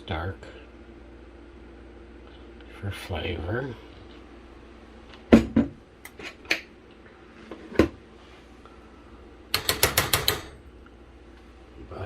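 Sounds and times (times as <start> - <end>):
kitchen containers knocking: 9.6 - 10.5.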